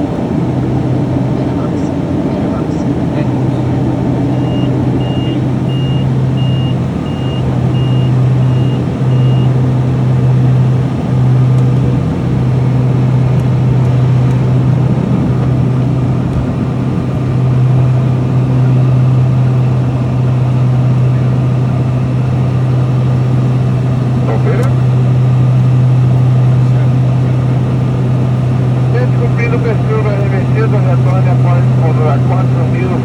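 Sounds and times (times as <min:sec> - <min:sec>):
turboprop engines droning: 0:00.0 - 0:33.0
high repeating beep: 0:04.3 - 0:09.5.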